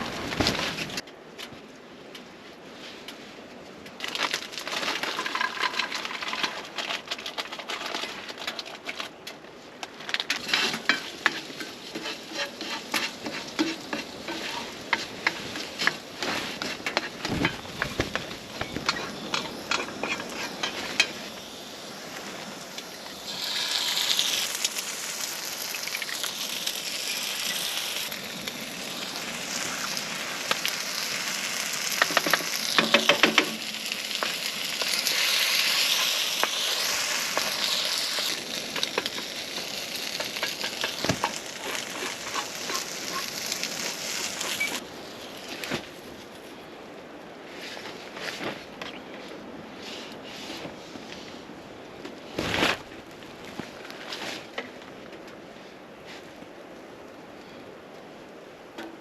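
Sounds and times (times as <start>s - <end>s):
food frying in a pan: 4.9s - 6.6s, 10.4s - 45.7s
steady sizzle: 10.1s - 46.5s
utensil scraping a pan: 10.3s - 21.2s, 34.8s - 44.8s.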